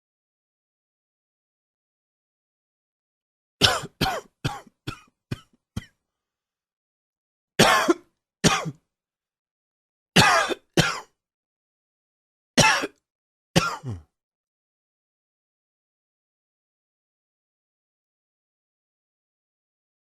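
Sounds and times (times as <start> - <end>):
man coughing: 3.6 - 5.9, 7.6 - 8.8, 10.2 - 11.1, 12.6 - 13.0, 13.6 - 14.1.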